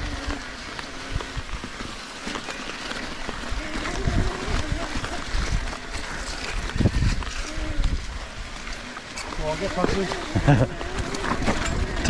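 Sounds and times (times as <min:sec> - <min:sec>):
bike knocking and rattling: 0:00.0 - 0:12.0
bike tyres rolling: 0:00.0 - 0:12.0
wind on microphone: 0:03.4 - 0:12.0.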